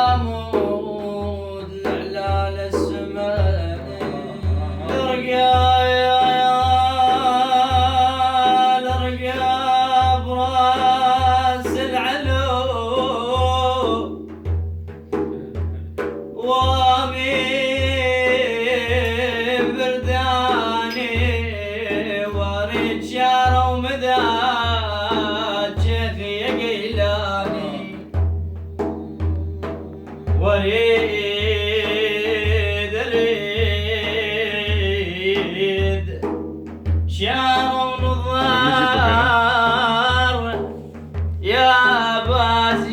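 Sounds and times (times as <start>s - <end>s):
deep drum rhythm: 0.0s - 42.9s
sharp percussion hits: 19.0s - 22.2s, 37.6s - 40.6s.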